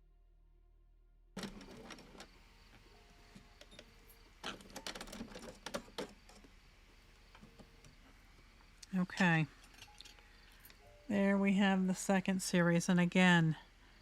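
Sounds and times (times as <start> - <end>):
sewing machine clicking and rattling: 1.4 - 2.4, 3.6 - 6.6.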